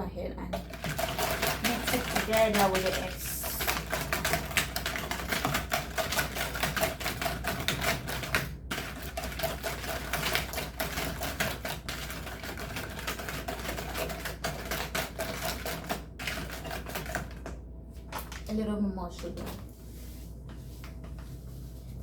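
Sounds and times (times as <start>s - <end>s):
whisk clicking against bowl: 0.6s - 17.3s.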